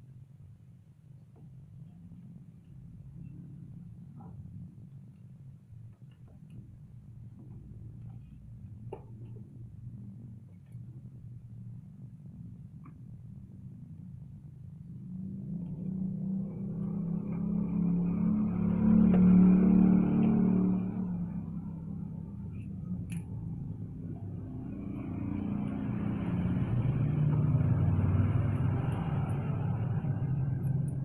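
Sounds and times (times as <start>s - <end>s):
engine revving: 15.3s - 21.9s, 24.0s - 31.0s.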